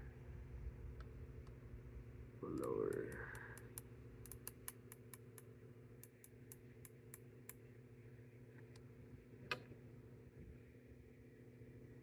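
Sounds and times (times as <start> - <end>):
cartridges clicking into magazine: 2.6 - 5.4.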